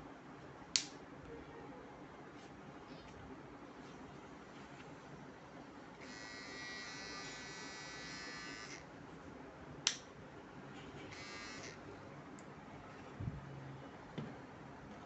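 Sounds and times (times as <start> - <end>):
hair trimmer motor buzzing: 6.0 - 8.9, 11.1 - 11.8.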